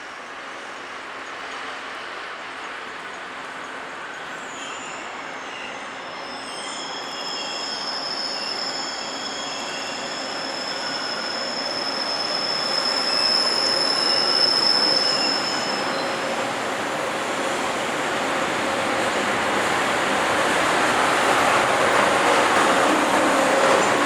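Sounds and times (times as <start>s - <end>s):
train wheels squealing: 2.6s - 24.0s
freight train rumble: 10.0s - 24.0s.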